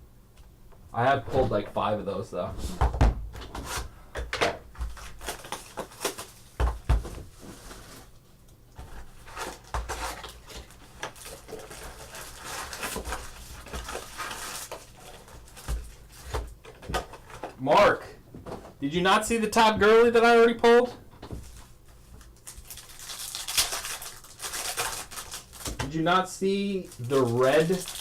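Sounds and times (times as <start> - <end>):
cards and packaging rustling: 3.5 - 8.2, 8.8 - 17.9, 19.8 - 28.0.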